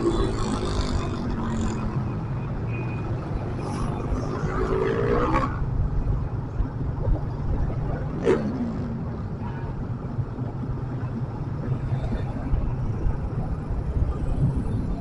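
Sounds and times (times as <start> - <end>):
low road rumble: 0.0 - 15.0
vehicle engines revving: 0.0 - 15.0.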